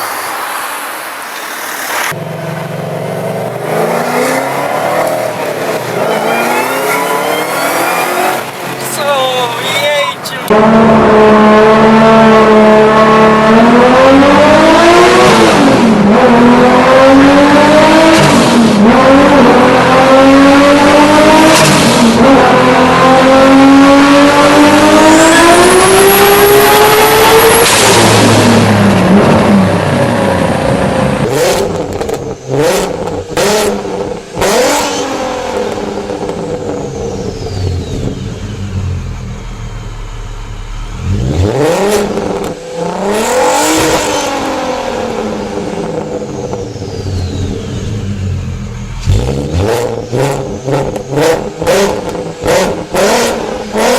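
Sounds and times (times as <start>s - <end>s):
car engine accelerating hard: 1.8s - 53.9s
turbo whistle: 6.1s - 8.4s.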